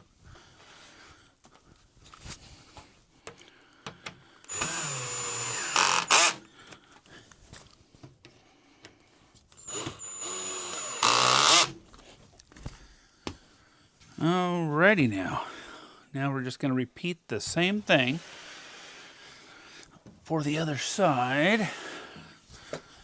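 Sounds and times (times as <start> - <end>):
cordless drill driving bolts: 4.5 - 6.5, 9.6 - 11.8.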